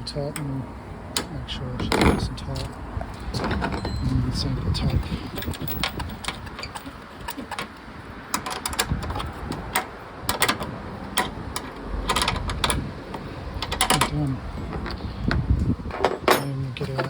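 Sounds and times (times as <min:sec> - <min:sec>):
spanner clicking on metal: 0:05.0 - 0:14.2.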